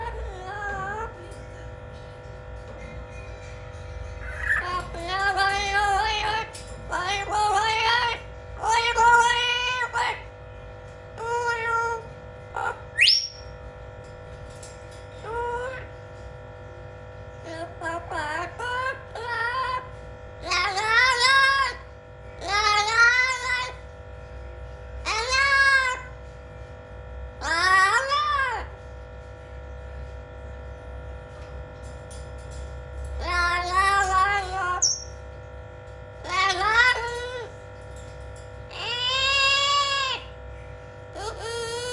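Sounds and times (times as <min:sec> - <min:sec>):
parrot calling: 0:04.1 - 0:10.3, 0:11.2 - 0:13.6, 0:17.4 - 0:23.8, 0:25.0 - 0:26.2, 0:27.4 - 0:28.8, 0:33.2 - 0:35.2, 0:36.2 - 0:37.6, 0:38.6 - 0:40.4, 0:41.1 - 0:41.9.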